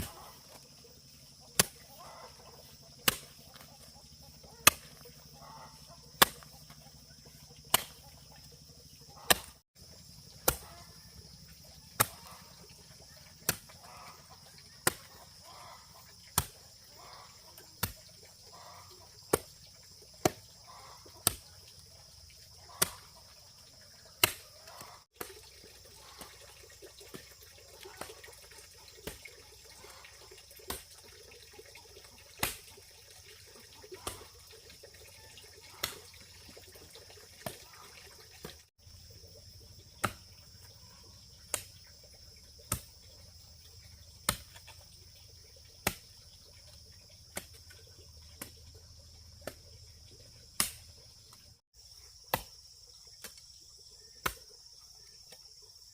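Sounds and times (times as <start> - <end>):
blade chopping: 1.6 - 1.9, 3.0 - 3.7, 4.6 - 5.0, 6.2 - 6.7, 7.7 - 8.0, 9.2 - 9.6, 10.4 - 10.7, 12.0 - 12.4, 14.8 - 15.2.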